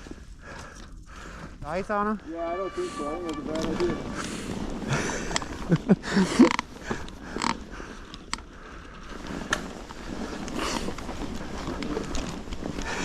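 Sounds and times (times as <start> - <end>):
bike riding through snow: 0.0 - 13.0
loud short noise: 2.3 - 4.5.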